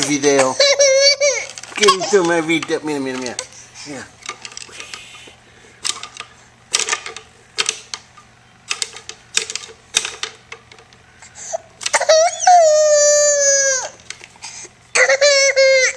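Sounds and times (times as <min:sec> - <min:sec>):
baby crying: 0:11.4 - 0:14.0, 0:14.9 - 0:15.9.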